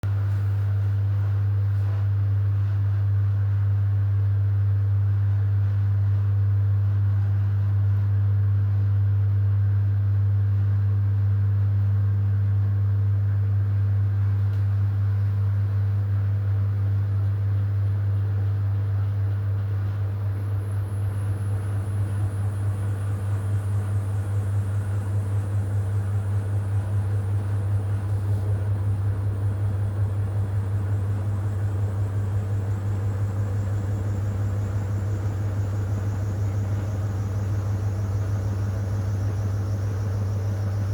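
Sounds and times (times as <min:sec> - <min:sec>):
washing machine humming: 0:13.7 - 0:40.9.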